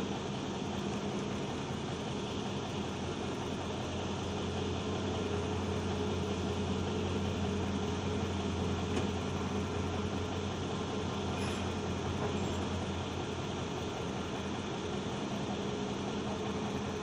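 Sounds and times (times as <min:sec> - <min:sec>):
heavy vehicle engine drone: 0:00.0 - 0:17.0.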